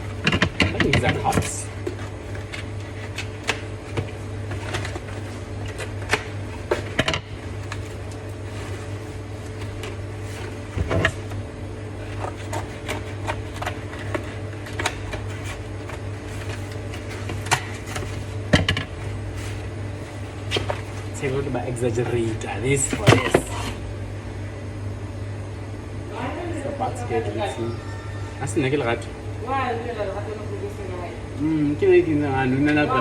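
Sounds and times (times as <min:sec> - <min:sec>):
steady low hum: 0:00.0 - 0:33.0
packaging rustling and clicks: 0:00.1 - 0:11.4, 0:12.0 - 0:21.3.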